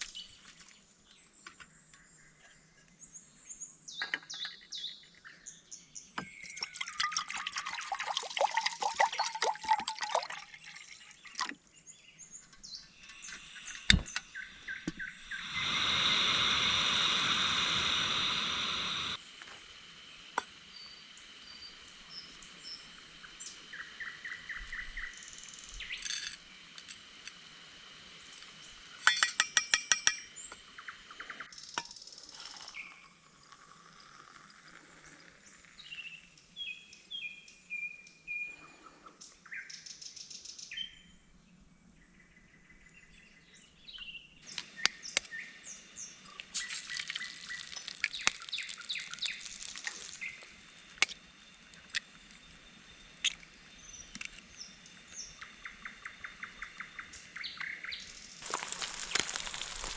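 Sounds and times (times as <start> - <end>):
small birds chirping: 10.6 - 19.2, 35.0 - 59.9.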